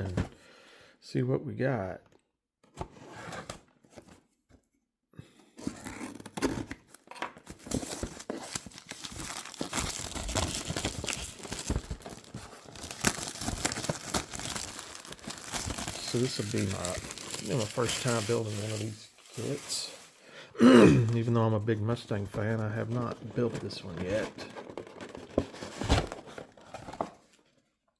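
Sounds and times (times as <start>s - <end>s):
plastic wrap crinkling and tearing: 7.5s - 20.2s.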